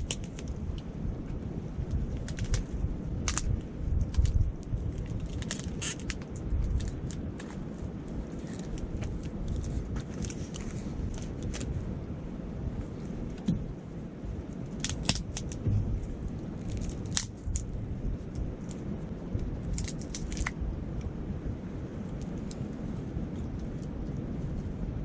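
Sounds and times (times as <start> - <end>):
low rush of wind: 0.0 - 25.0
campfire crackling and popping: 1.8 - 11.7, 14.7 - 20.6.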